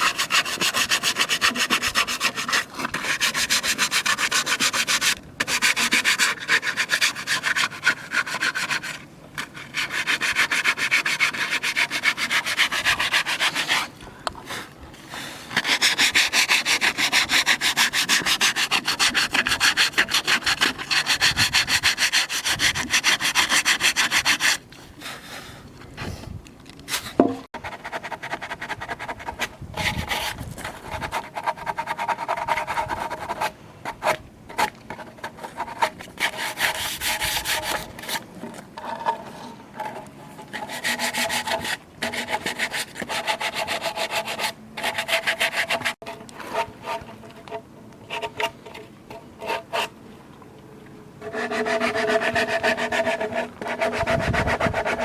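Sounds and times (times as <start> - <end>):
wood being sanded by hand: 0.0 - 13.9, 15.5 - 24.6, 35.3 - 38.2, 40.5 - 47.0, 51.2 - 55.0.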